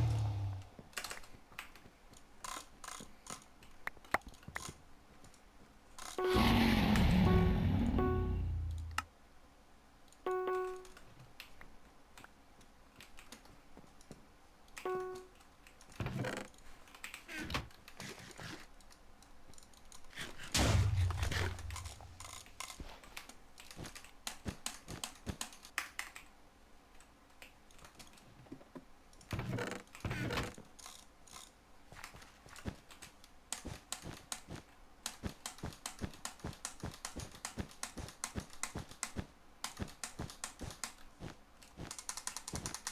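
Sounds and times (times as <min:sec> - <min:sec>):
short pitched beep: 0:06.2 - 0:09.0, 0:10.3 - 0:10.9, 0:14.9 - 0:15.3.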